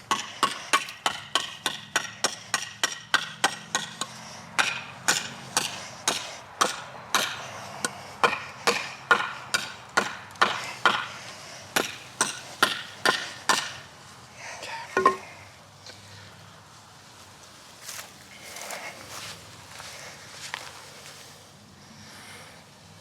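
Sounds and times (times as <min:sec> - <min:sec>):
cleaver chopping into wood: 0:00.1 - 0:11.2, 0:11.8 - 0:13.8.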